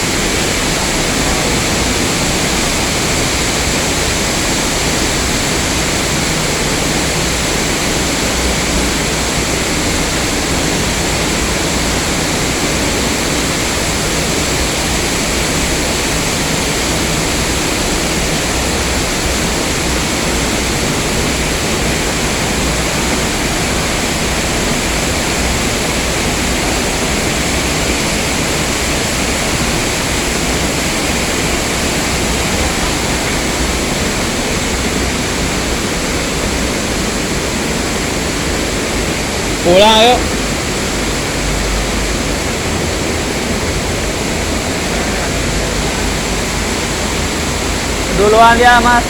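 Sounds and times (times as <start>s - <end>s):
waterfall rushing: 0.0s - 49.0s.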